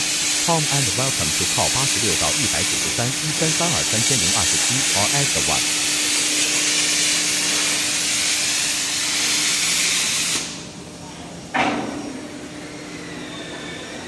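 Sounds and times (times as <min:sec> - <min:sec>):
electric welding arc hissing: 0:00.0 - 0:10.7.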